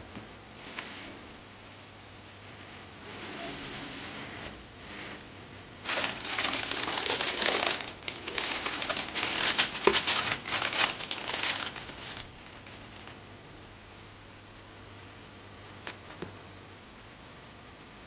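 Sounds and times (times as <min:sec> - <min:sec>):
paper crinkling and rustling: 0:05.8 - 0:13.2.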